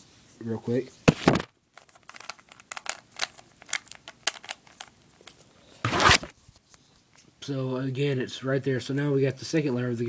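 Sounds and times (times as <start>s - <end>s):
puzzle cube plastic clicks: 1.8s - 5.4s.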